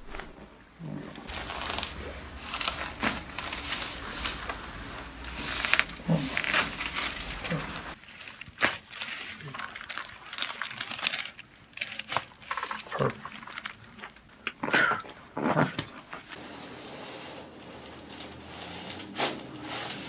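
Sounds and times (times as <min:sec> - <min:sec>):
clothing rustling: 0:00.0 - 0:09.7
neck joints cracking: 0:00.0 - 0:16.4.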